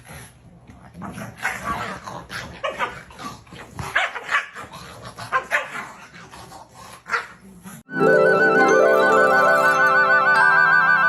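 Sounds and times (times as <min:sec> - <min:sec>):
dog barking and yipping: 0:03.9 - 0:04.7, 0:05.3 - 0:06.0.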